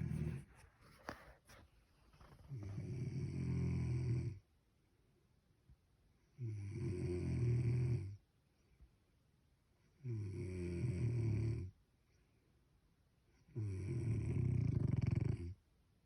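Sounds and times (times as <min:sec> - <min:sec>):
snoring: 0:00.0 - 0:00.6, 0:02.4 - 0:04.4, 0:06.4 - 0:08.2, 0:10.0 - 0:11.7, 0:13.5 - 0:15.6
quiet breaths: 0:00.0 - 0:05.3, 0:06.1 - 0:15.7.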